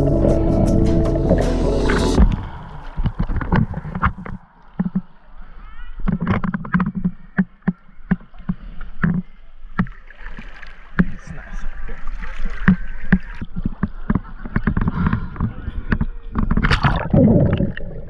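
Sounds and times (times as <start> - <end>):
water splashing: 0.0 - 14.9.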